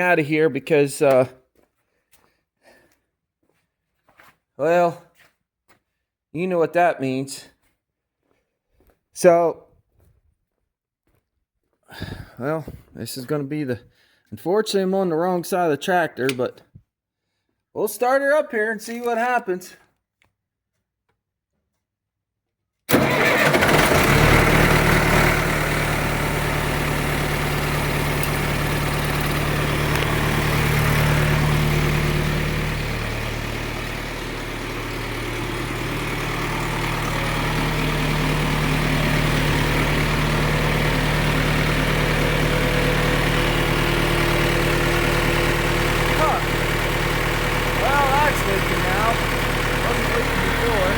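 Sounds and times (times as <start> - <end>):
tractor diesel engine idling: 22.9 - 50.9.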